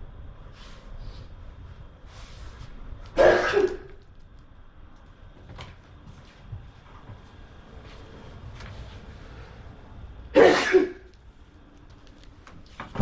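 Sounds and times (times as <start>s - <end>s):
person sneezing: 3.2s - 3.9s, 10.3s - 11.1s.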